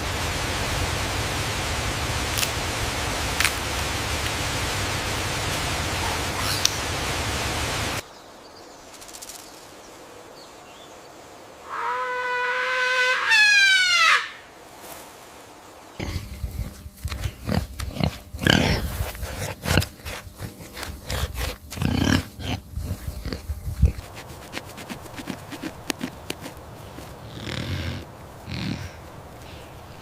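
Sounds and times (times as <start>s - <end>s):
high trumpet-like animal call: 11.6s - 14.5s
animal grunts and snorts: 16.0s - 29.1s.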